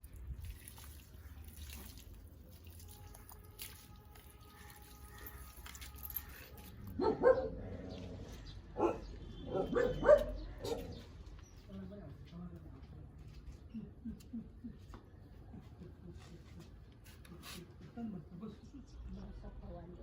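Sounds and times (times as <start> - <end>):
dog barking: 7.0 - 7.6, 8.8 - 11.0.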